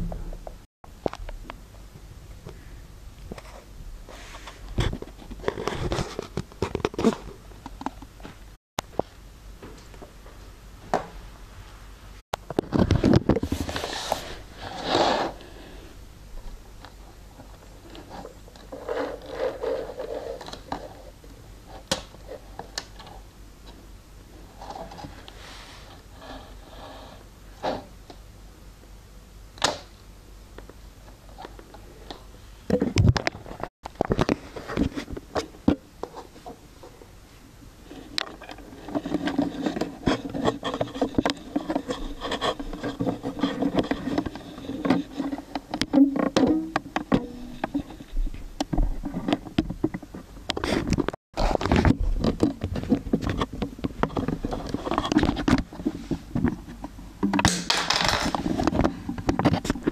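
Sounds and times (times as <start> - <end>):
plastic clicks and scraping: 4.7 - 8.1, 37.9 - 59.9.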